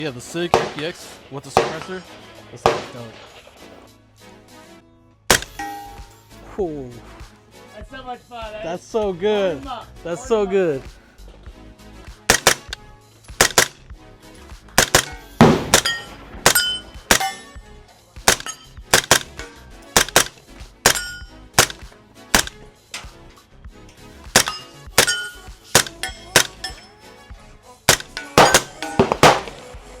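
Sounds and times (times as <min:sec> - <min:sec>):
suppressed airsoft gun shots: 0:00.5 - 0:00.8, 0:05.3 - 0:05.6, 0:12.3 - 0:12.8, 0:13.4 - 0:13.8, 0:14.7 - 0:17.4, 0:18.2 - 0:22.7, 0:24.3 - 0:26.8, 0:27.9 - 0:29.7.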